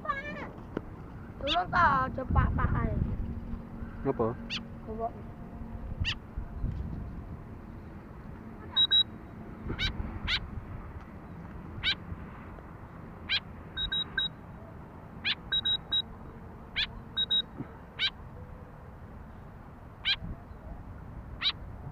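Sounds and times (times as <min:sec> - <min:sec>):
bird harsh sweeping calls: 0:03.7 - 0:04.9, 0:06.0 - 0:06.2, 0:08.6 - 0:10.5, 0:11.8 - 0:12.0, 0:13.2 - 0:14.4, 0:15.2 - 0:16.1, 0:16.7 - 0:18.2, 0:20.0 - 0:20.3, 0:21.4 - 0:21.6
high pure bird pips: 0:08.6 - 0:10.4, 0:13.3 - 0:14.4, 0:15.2 - 0:16.1, 0:16.8 - 0:18.2.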